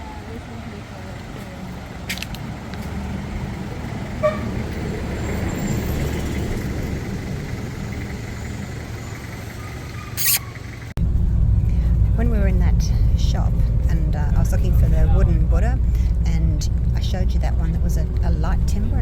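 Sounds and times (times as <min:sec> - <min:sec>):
traffic rumble: 0:00.0 - 0:19.0.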